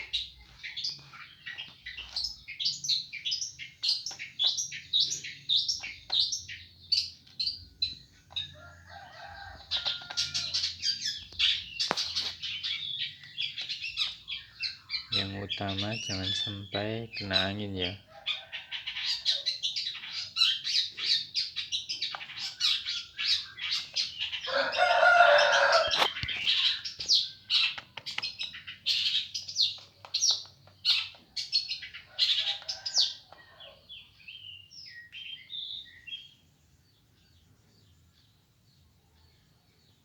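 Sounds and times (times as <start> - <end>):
bird chirping and clicking: 0.0 - 35.5.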